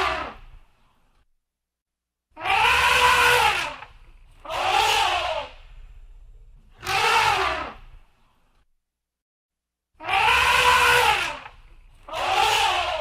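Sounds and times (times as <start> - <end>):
elephant trumpeting: 2.4 - 8.0, 10.0 - 13.0.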